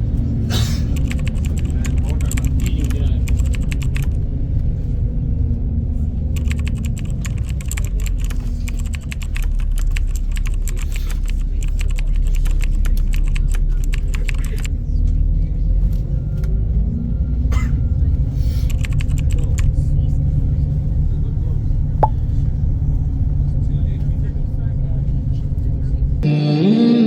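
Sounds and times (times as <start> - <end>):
rapid small clicks: 6.4 - 14.7.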